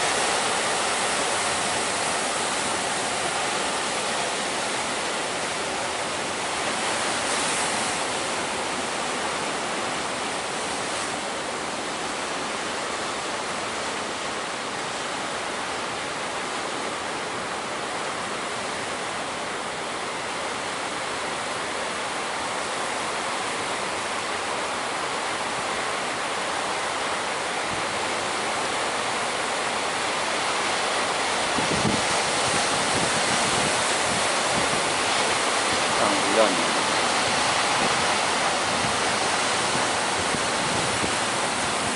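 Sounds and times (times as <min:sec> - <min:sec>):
heavy sea surf breaking: 0:00.0 - 0:41.9
strong wind: 0:16.9 - 0:41.9
wind thump on microphone: 0:31.6 - 0:35.0.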